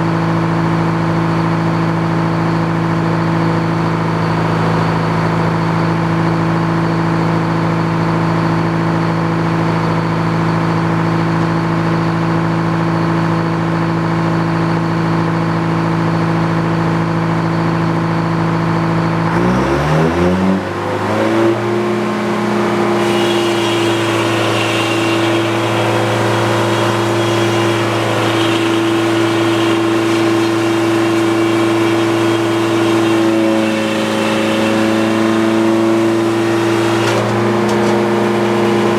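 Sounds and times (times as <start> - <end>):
sawmill engine running: 15.0 - 38.9.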